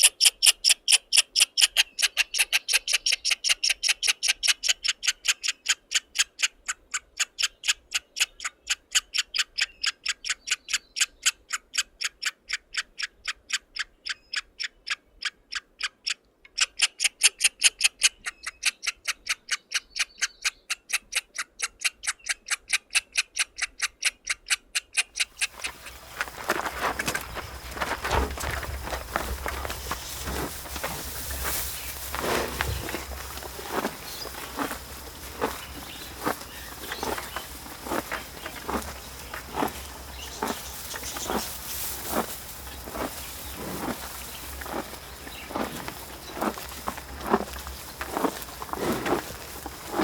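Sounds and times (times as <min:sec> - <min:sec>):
bird sharp high calls: 0:25.2 - 0:50.0
rough rustling: 0:25.2 - 0:50.0.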